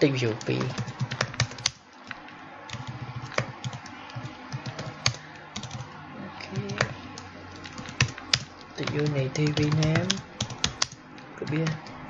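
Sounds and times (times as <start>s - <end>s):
keyboard typing: 0.4s - 12.0s.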